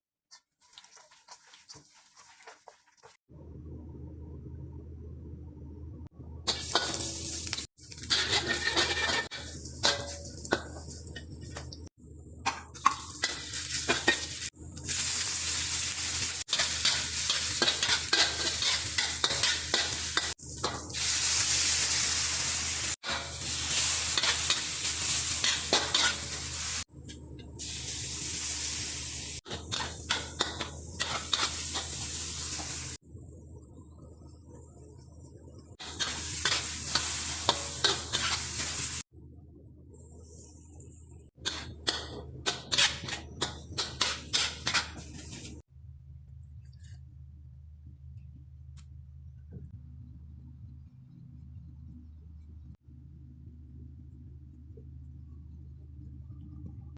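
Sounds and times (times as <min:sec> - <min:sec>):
noodles sizzling in a pan: 0:00.4 - 0:03.2, 0:06.5 - 0:11.1, 0:12.9 - 0:26.9, 0:27.6 - 0:33.0, 0:35.8 - 0:39.1, 0:41.3 - 0:45.7
utensil scraping a pan: 0:08.0 - 0:11.4, 0:29.5 - 0:32.0, 0:41.4 - 0:45.6.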